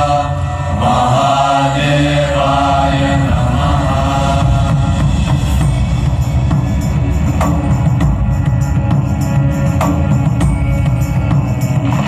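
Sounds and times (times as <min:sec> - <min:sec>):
devotional music with heavy drums: 0:00.0 - 0:12.0
sharp percussion strikes: 0:03.7 - 0:12.0.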